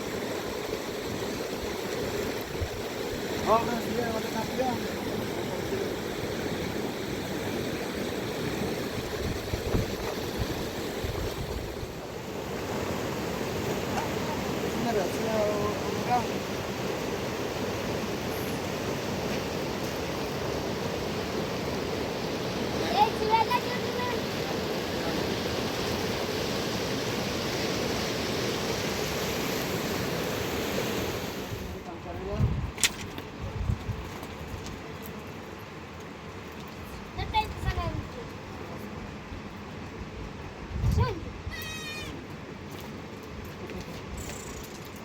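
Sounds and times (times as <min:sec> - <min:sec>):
river rushing: 0:00.0 - 0:32.1.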